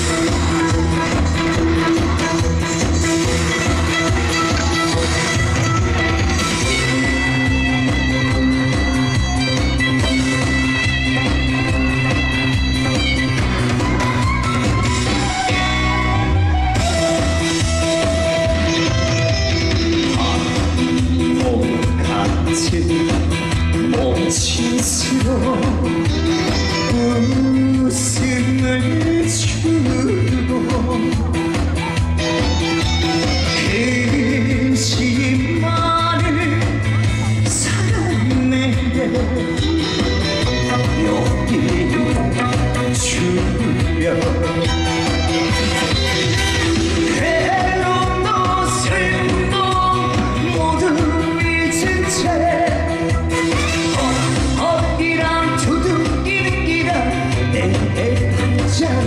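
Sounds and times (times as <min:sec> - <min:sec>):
band music over loudspeakers: 0:00.0 - 0:59.0
person singing long notes: 0:23.8 - 0:59.0.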